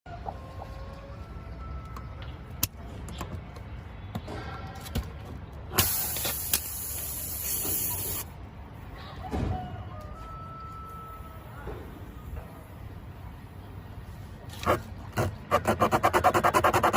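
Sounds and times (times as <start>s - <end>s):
air hissing: 5.7s - 8.3s.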